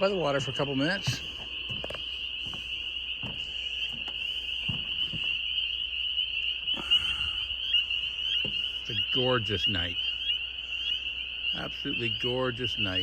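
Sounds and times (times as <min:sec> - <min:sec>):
frogs trilling chorus: 0:00.0 - 0:13.0
soft knocks: 0:01.0 - 0:05.4.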